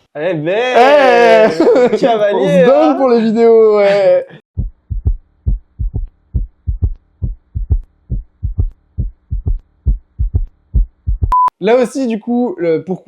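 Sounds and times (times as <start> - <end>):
heartbeat gallop thumps: 4.6 - 11.4.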